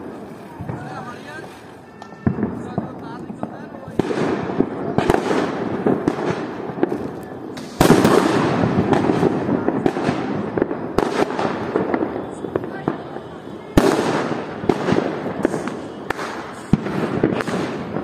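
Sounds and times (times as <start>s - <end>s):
dense firecracker crackle: 0.0s - 18.0s
firecracker bangs: 0.0s - 18.0s.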